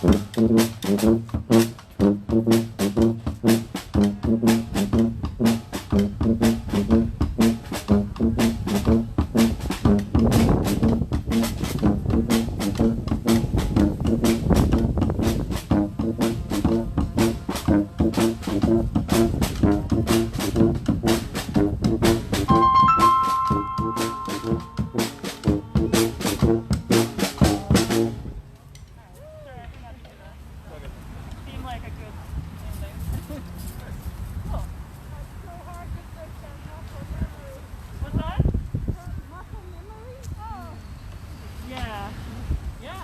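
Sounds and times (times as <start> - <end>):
steady drum beat: 0.0 - 28.3
brass band playing: 0.0 - 28.4
trombone riff: 0.0 - 28.4
held high tone: 22.5 - 27.4.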